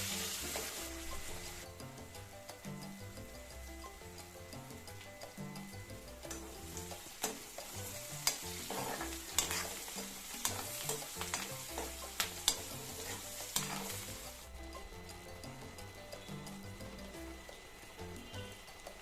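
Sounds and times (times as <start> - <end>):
food sizzling in a pan: 0.0 - 19.0
utensil clacking against pan: 6.2 - 14.2.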